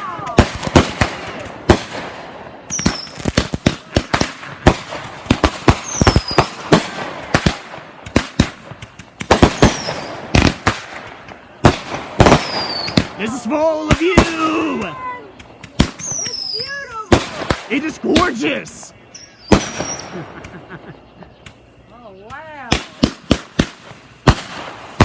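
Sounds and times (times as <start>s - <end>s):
fireworks bangs and pops: 0.0s - 20.8s, 21.4s - 25.0s
falling firework whistles: 2.7s - 3.6s, 5.3s - 7.5s, 9.3s - 11.0s, 11.7s - 17.7s, 19.1s - 20.6s.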